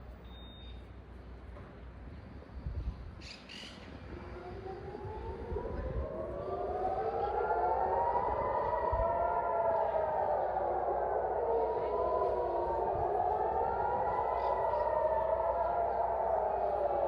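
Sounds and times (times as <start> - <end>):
air raid siren wailing: 4.1 - 17.0.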